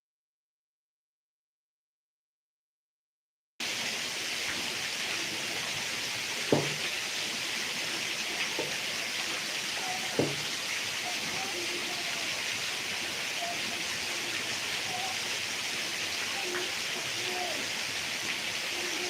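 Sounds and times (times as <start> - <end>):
heavy rain: 3.6 - 19.0
sharp knocks: 6.5 - 6.8.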